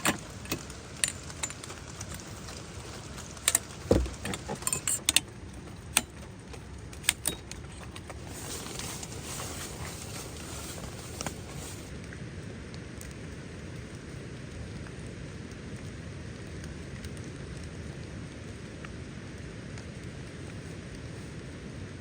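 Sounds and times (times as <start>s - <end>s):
rain hiss: 0.0s - 7.2s, 7.9s - 12.0s
clicks and knocks of handling: 0.0s - 11.9s
dull thump: 3.8s - 4.6s.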